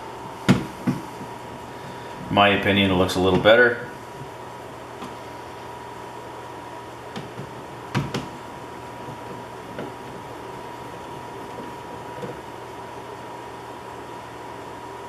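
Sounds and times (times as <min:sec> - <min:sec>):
hands working screws and plastic: 0:00.4 - 0:05.2, 0:07.2 - 0:12.8.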